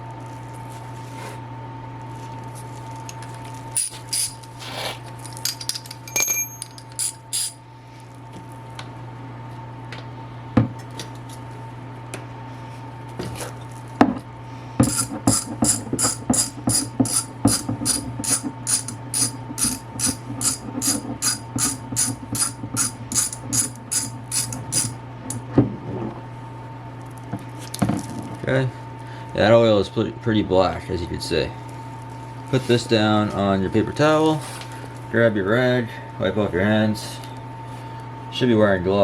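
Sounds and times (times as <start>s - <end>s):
hand tools clinking: 3.8s - 4.4s, 5.2s - 7.6s
socket ratchet clicking: 6.9s - 7.6s, 14.8s - 24.9s.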